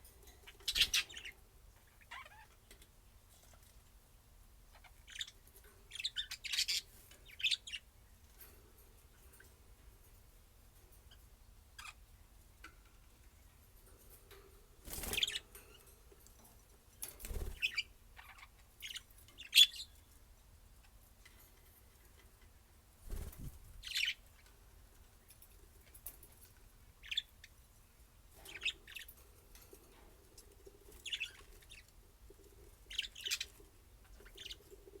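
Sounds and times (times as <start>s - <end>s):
parrots chirping: 0.5s - 1.3s, 1.9s - 2.5s.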